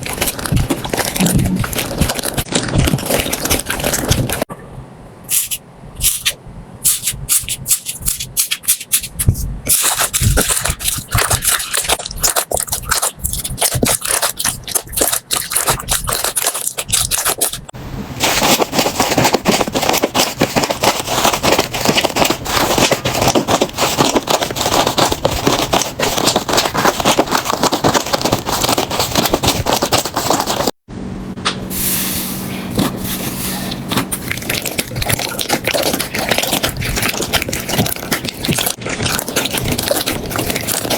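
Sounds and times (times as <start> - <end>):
slime crackling and popping: 0.0 - 4.5, 6.9 - 17.7, 34.2 - 40.9.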